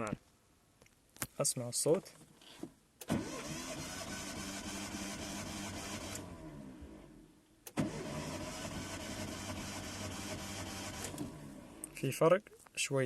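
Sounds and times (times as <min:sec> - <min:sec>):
engine cranking by starter motor: 0:03.0 - 0:11.8.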